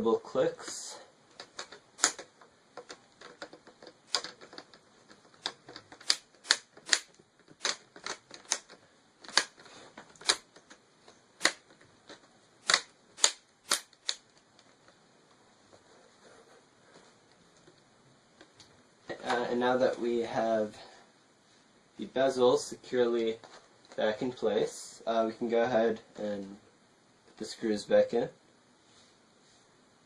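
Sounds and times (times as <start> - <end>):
plastic clips snapping: 1.4 - 10.8, 11.4 - 14.4.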